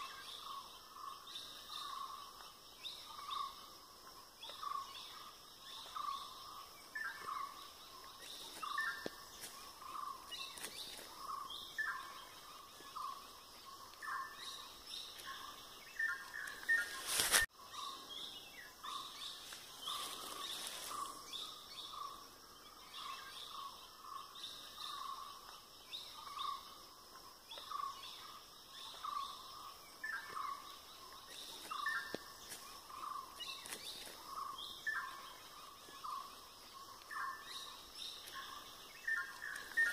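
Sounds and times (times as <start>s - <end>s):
birds chirping: 0.0s - 39.9s
steady high hiss: 6.3s - 17.5s.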